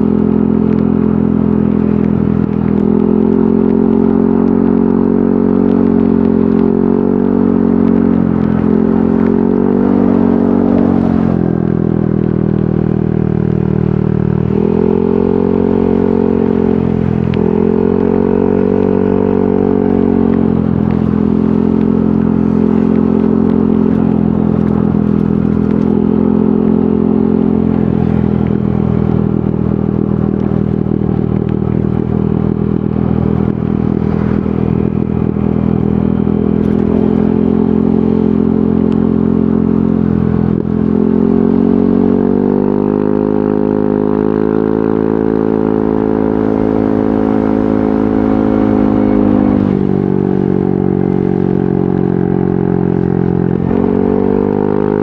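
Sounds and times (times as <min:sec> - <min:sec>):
scooter engine running: 0:00.0 - 0:55.0.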